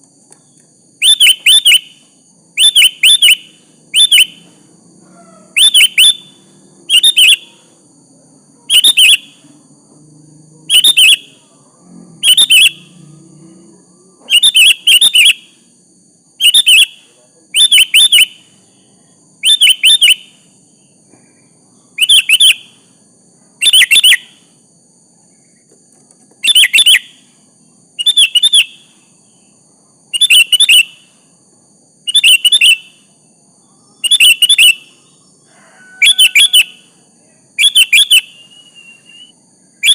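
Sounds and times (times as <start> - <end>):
bulbul calling: 0.4 - 7.7, 8.7 - 9.4, 10.7 - 11.5, 12.2 - 13.0, 14.2 - 15.6, 16.4 - 18.6, 19.4 - 20.5, 21.9 - 22.8, 23.6 - 24.4, 26.4 - 27.3, 28.0 - 29.0, 30.1 - 31.2, 32.1 - 33.1, 34.0 - 35.2, 35.9 - 36.9, 37.6 - 39.9.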